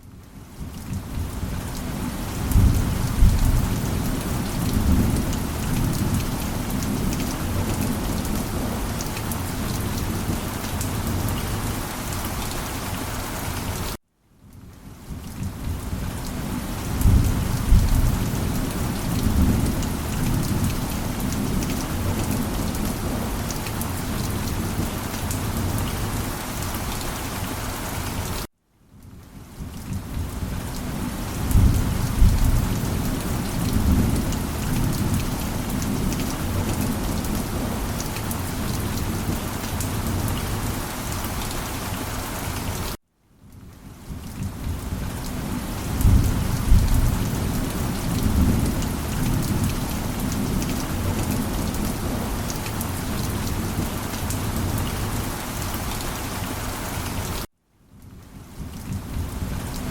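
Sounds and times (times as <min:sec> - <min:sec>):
heavy rain: 0:00.0 - 0:59.9
thunder rumbling: 0:02.4 - 0:10.5, 0:16.8 - 0:23.9, 0:31.3 - 0:40.5, 0:45.8 - 0:55.3.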